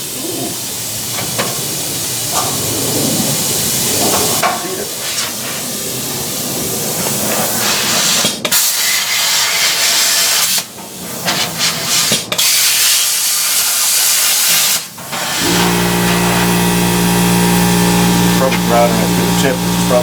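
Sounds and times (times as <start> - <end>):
pneumatic grinder cutting steel: 7.6 - 20.0
air compressor motor humming: 15.3 - 20.0.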